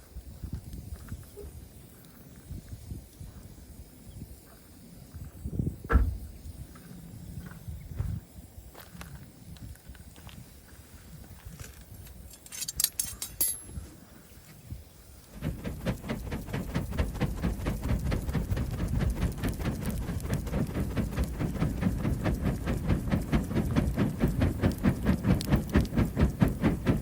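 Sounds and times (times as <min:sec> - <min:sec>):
sharp fire snaps: 0:15.2 - 0:27.0
wood fire crackling: 0:15.2 - 0:27.0
low rumble: 0:15.3 - 0:27.0.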